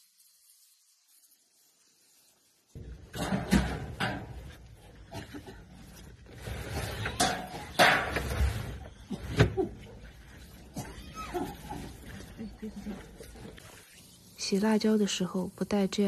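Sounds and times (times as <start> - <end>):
rustling of peppers: 0.0 - 15.5
water splashing: 2.8 - 15.2.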